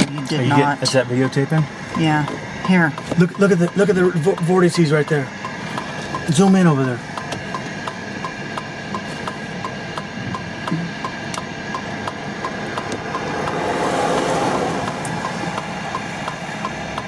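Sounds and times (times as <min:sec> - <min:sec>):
car engine idling: 0:00.0 - 0:17.0
hazard flasher ticking: 0:00.0 - 0:17.0
rushing noise: 0:11.6 - 0:17.0.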